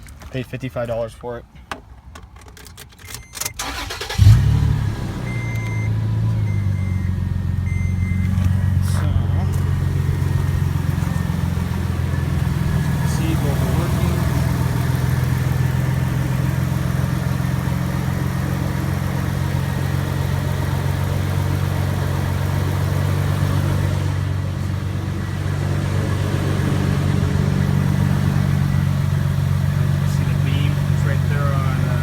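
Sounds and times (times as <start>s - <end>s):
car engine idling: 3.6s - 32.0s.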